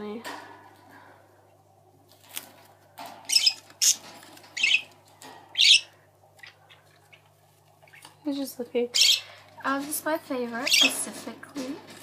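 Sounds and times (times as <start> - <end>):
budgie chicks squawking: 3.3 - 8.2, 8.8 - 9.6, 10.6 - 11.1.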